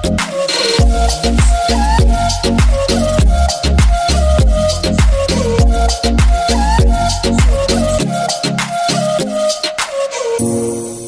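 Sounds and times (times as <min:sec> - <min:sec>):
synth notes: 0:00.0 - 0:09.8
deep kick drums: 0:00.8 - 0:07.6.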